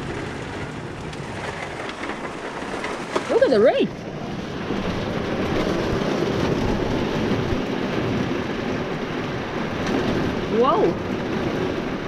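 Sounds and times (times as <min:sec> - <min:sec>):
heavy rain on van roof: 0:00.0 - 0:12.0.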